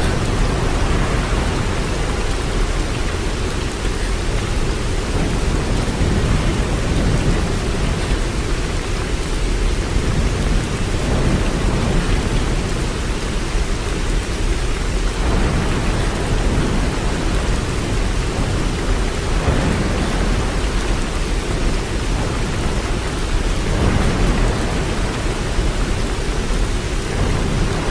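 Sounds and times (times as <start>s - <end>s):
waterfall rushing: 0.0s - 27.9s.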